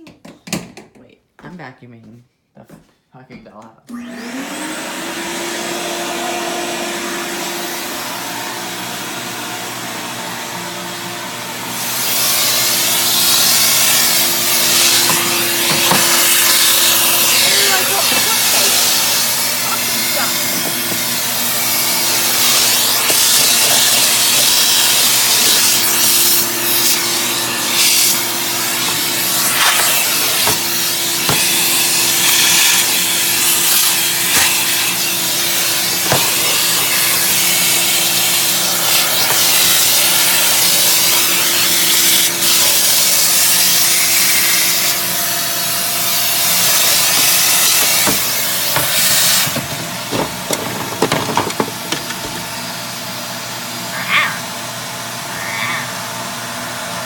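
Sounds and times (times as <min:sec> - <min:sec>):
vacuum cleaner running: 0:03.9 - 0:57.0
vacuum nozzle rubbing and knocking: 0:12.2 - 0:43.8, 0:46.0 - 0:52.6.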